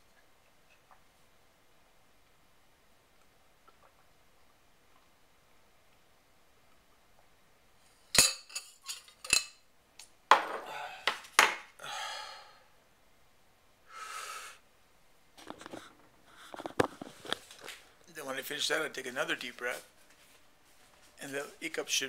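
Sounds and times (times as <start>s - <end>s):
deep breathing: 11.8s - 12.8s, 13.9s - 14.6s.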